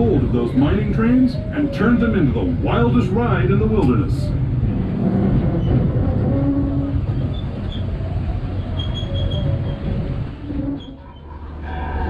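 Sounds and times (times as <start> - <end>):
train wheels rumbling on rail: 0.0 - 12.0
high wheel squeals: 5.5 - 12.0.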